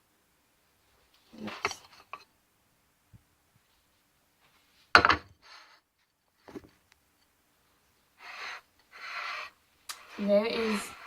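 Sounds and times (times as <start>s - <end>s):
short scrape: 8.2s - 11.0s.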